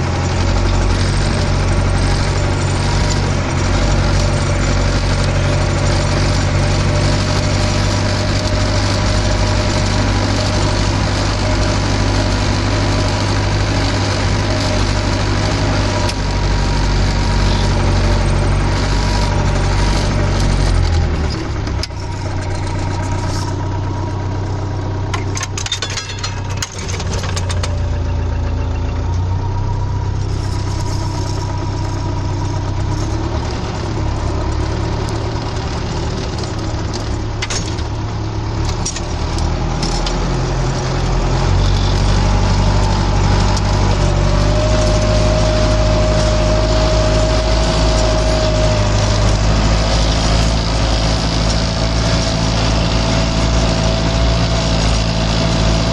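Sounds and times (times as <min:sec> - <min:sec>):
tractor diesel engine running: 0:00.0 - 0:55.9
clanks and knocks: 0:25.1 - 0:28.1, 0:34.4 - 0:40.8.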